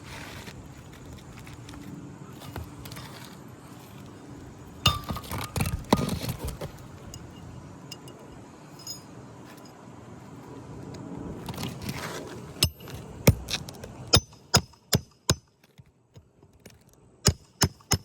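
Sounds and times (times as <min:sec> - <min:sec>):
hand tools clinking on shingles: 0:04.8 - 0:09.8.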